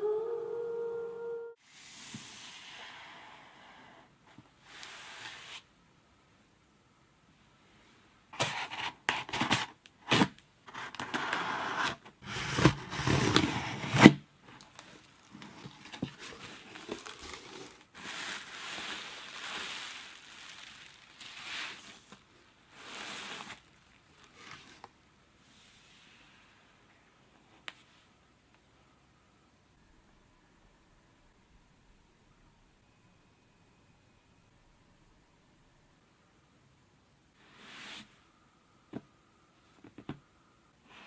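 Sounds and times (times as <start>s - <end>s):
packaging rustling and scraping: 8.4s - 24.9s.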